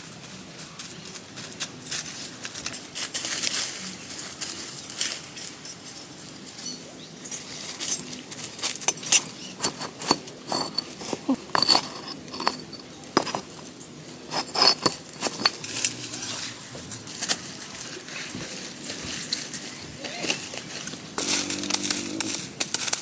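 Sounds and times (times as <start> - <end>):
rustling and crackling: 7.2 - 23.0.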